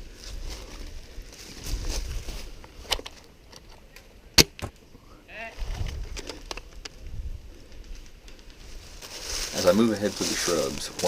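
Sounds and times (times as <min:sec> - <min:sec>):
rustling on the microphone: 0:00.0 - 0:03.3, 0:05.5 - 0:11.0.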